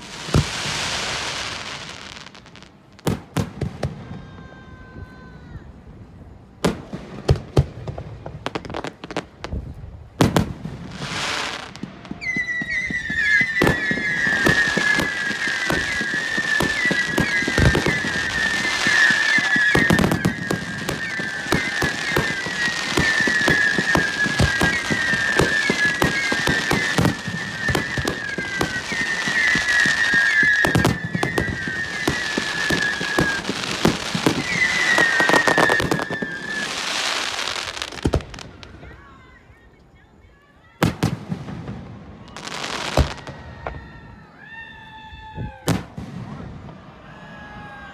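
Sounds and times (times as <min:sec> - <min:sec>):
fireworks crackling: 0:00.0 - 0:47.9
firework shells bursting: 0:10.2 - 0:38.8
high wavering firework whistle: 0:10.2 - 0:39.7, 0:42.1 - 0:47.9.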